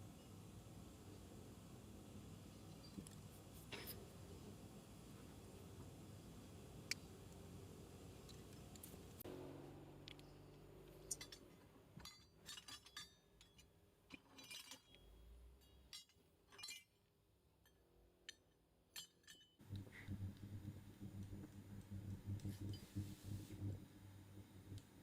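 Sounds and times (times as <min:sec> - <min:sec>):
small metal parts clinking: 0:10.9 - 0:17.0, 0:17.6 - 0:19.6
low pulsing hum: 0:19.6 - 0:25.0.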